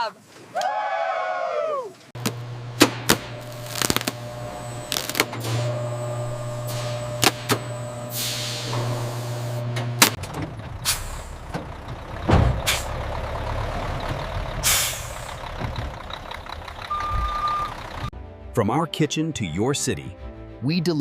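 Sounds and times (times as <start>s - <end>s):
mechanical hum: 2.2s - 10.2s
air hissing: 3.0s - 9.7s.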